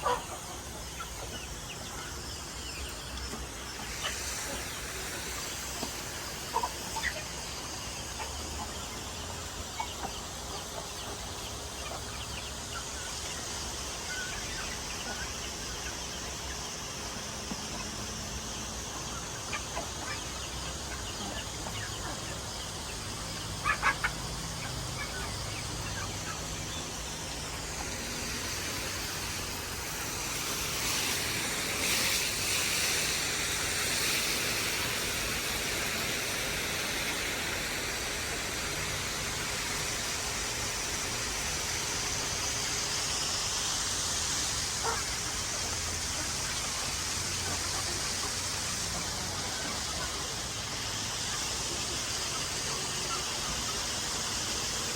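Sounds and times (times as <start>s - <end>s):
chicken squawks: 0.0s - 1.2s, 23.5s - 26.6s
chickens clucking: 0.0s - 54.9s
steady hiss: 0.0s - 54.9s.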